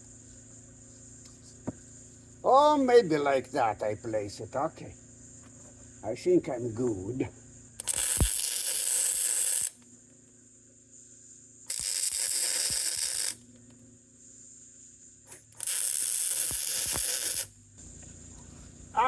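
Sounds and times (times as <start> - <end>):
faint steady hum: 0.0 - 19.0
welding arc crackling: 7.8 - 9.8, 11.7 - 13.4, 15.3 - 17.5.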